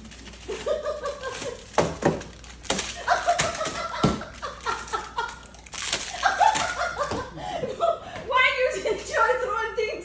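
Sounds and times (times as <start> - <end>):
small objects thrown down: 0.1 - 6.9
voice: 8.3 - 10.0.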